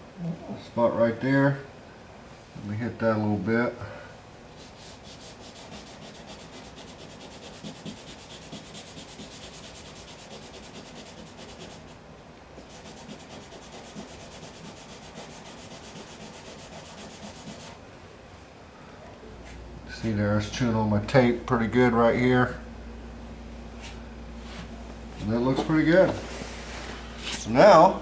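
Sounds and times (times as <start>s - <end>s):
sanding block rubbing on paint: 4.6s - 12.0s, 12.6s - 17.8s.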